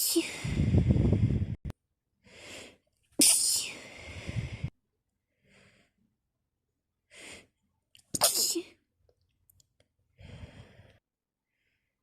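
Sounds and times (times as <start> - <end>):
short in-breath: 2.2 - 4.7, 10.2 - 11.9
woman sneezing: 3.2 - 3.8, 8.2 - 8.8.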